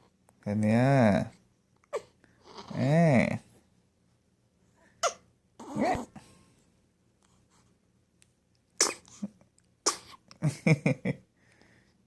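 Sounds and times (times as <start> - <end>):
person sneezing: 5.0 - 6.2, 8.8 - 10.2.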